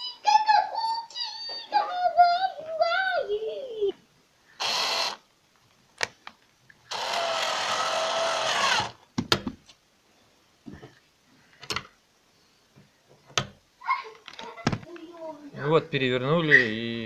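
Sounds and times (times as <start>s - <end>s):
electric screwdriver whirring: 4.6s - 5.2s, 6.9s - 9.0s.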